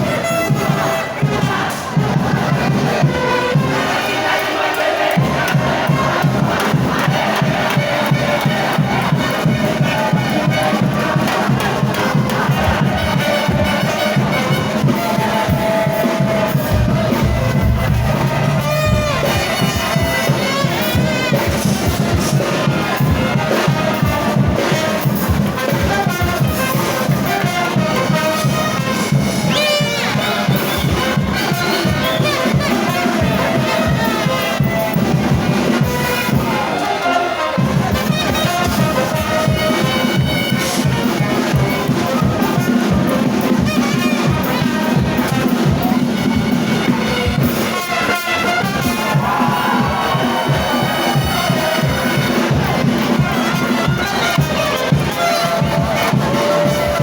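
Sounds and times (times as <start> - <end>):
brass band playing: 0.0 - 57.0
crowd noise: 0.0 - 57.0.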